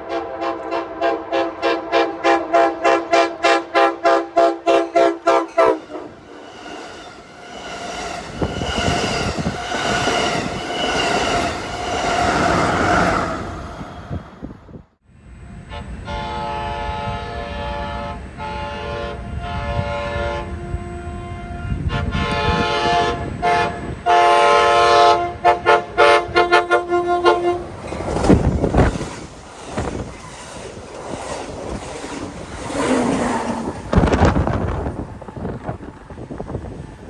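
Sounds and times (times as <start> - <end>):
train air horn blasts: 0.0 - 6.3, 15.4 - 28.8
train low rumble: 0.0 - 37.0.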